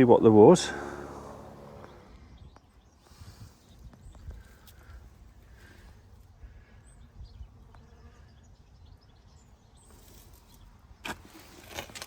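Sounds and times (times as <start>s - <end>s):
wind rumble on microphone: 1.8s - 9.9s
sharp handling noises: 9.9s - 12.0s.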